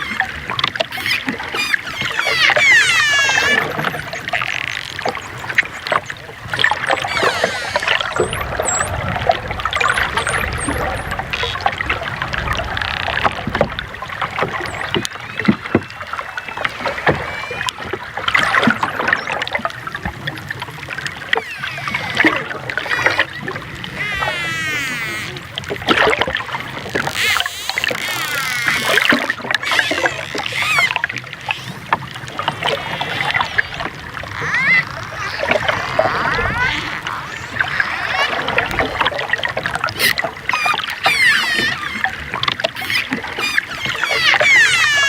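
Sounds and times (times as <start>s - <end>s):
dolphin clicks: 0.0s - 8.8s, 21.3s - 39.2s, 39.8s - 45.0s
dolphins whistling: 0.0s - 11.7s, 14.5s - 20.0s, 20.6s - 25.6s, 27.1s - 45.0s
underwater noise wash: 0.0s - 45.0s.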